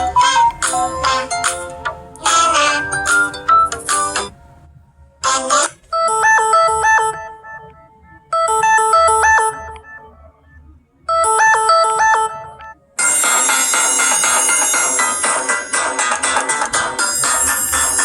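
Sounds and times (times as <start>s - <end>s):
electronic phone ringtone melody: 6.0s - 10.2s, 11.1s - 18.0s.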